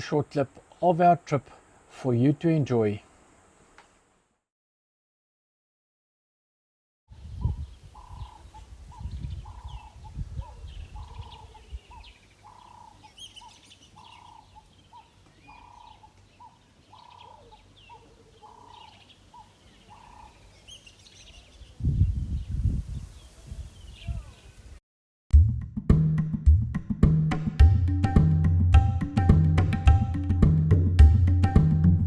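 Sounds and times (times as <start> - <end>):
birds chirping: 7.3 - 24.7.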